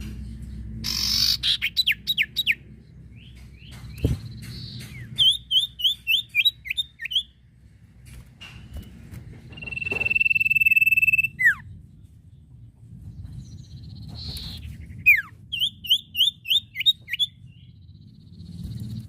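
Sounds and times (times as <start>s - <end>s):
low hum: 0.0s - 16.2s, 17.0s - 19.0s
bird whistling and chirping: 0.8s - 2.6s, 3.2s - 7.4s, 9.5s - 11.7s, 14.0s - 17.7s.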